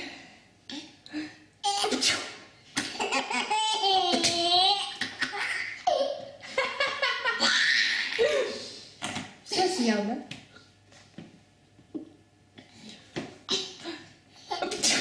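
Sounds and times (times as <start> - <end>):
baby laughing: 2.8 - 8.4.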